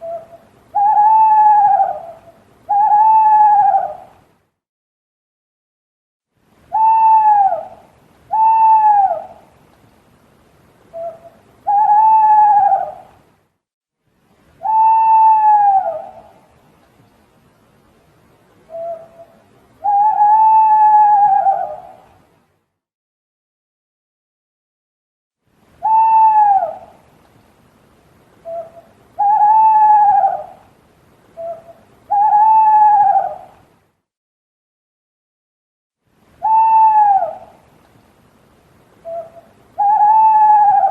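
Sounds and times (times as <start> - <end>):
owl hooting: 0.0 - 4.2, 6.7 - 9.5, 10.9 - 13.1, 14.6 - 16.4, 18.7 - 22.2, 25.8 - 27.0, 28.4 - 30.7, 31.4 - 33.6, 36.4 - 37.6, 39.0 - 40.9.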